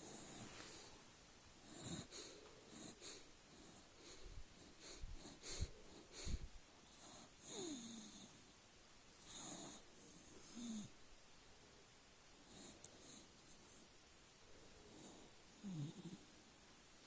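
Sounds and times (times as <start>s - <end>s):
dog snoring and wheezing: 0.0s - 0.9s, 1.6s - 8.5s, 9.2s - 10.9s, 12.5s - 13.8s, 14.9s - 16.5s.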